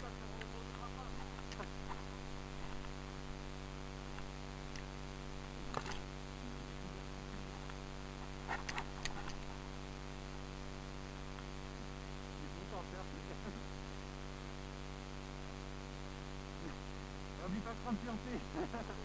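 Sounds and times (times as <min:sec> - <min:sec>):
electrical hum: 0:00.0 - 0:19.0
sharp clicks: 0:08.5 - 0:09.5.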